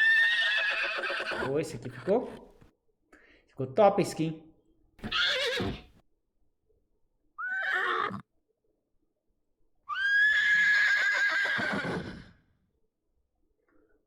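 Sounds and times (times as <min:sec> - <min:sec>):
horse whinny: 0:00.0 - 0:02.4, 0:05.0 - 0:06.0, 0:07.4 - 0:08.2, 0:09.9 - 0:12.4.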